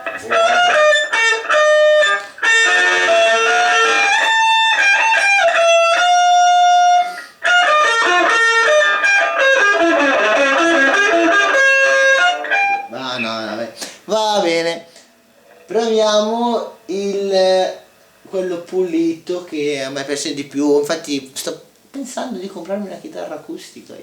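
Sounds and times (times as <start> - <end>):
overdriven electric guitar: 0.0 - 13.4.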